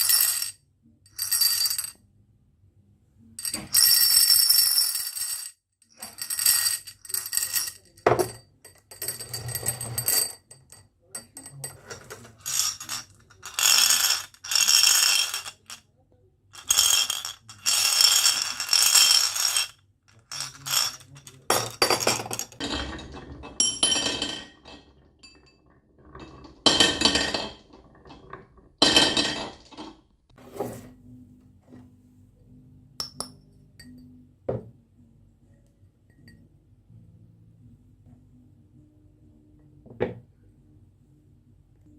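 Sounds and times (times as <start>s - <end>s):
marble clinks and clicks: 11.2s - 15.8s, 16.6s - 22.6s
marbles rolling down tracks: 12.0s - 15.8s, 16.6s - 23.4s.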